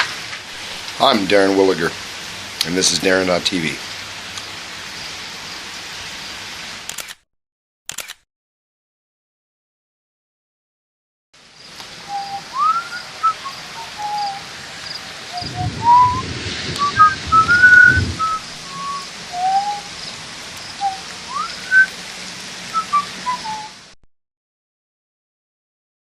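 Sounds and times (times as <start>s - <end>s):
steady hiss: 0.0s - 6.9s, 11.4s - 24.0s
person whistling a tune: 12.1s - 14.4s, 15.5s - 16.2s, 16.8s - 19.8s, 20.8s - 21.9s, 22.8s - 23.8s
low rumble: 15.3s - 18.9s.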